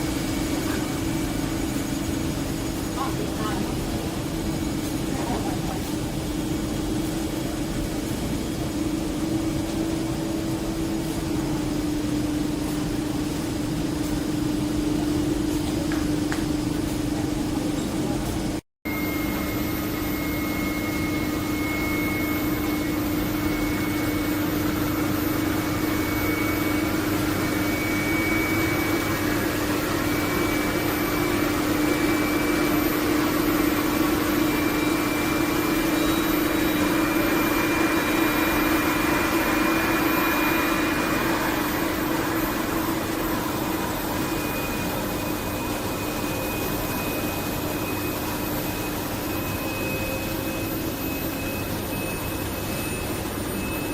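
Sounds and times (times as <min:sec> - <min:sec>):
machine whirring hum: 0:00.0 - 0:53.9
faint high whine: 0:18.9 - 0:53.9.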